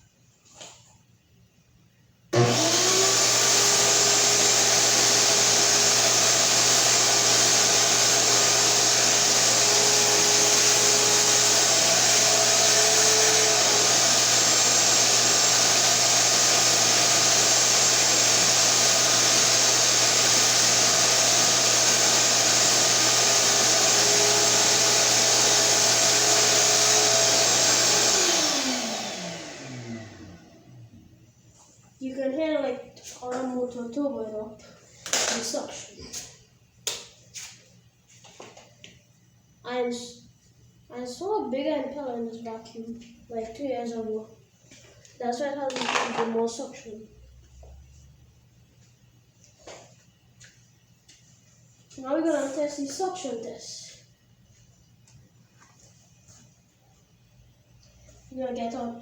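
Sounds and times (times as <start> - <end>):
vacuum motor whining: 2.4 - 31.0.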